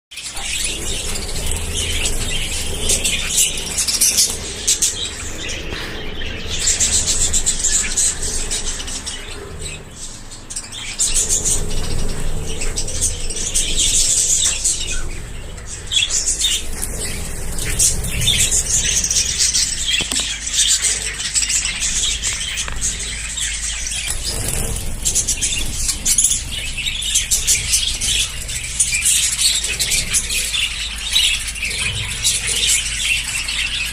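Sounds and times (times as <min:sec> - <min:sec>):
budgerigars chattering and chirping: 0:00.2 - 0:33.9.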